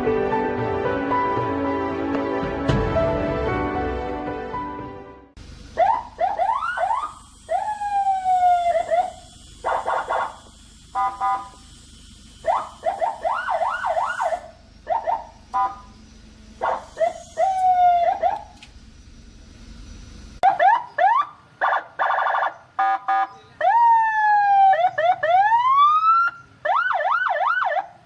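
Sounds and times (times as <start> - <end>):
electronic siren cycling tones: 5.8 - 18.6, 20.4 - 27.9.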